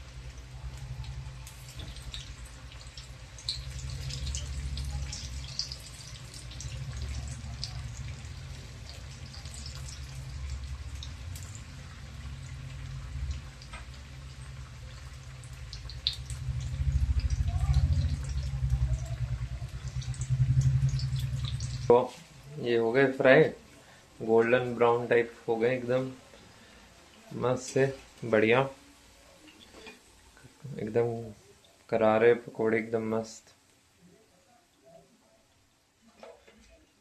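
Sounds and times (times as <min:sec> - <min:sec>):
batter sizzling in hot oil: 0:00.0 - 0:22.5
low steady hum: 0:00.0 - 0:32.0
small crackles and pops: 0:00.4 - 0:11.9, 0:12.8 - 0:22.2, 0:29.4 - 0:30.5.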